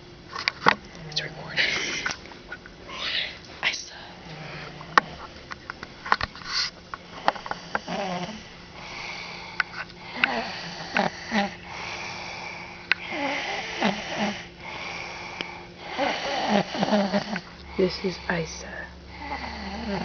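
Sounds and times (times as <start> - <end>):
person snoring: 7.2 - 18.5, 19.1 - 20.0.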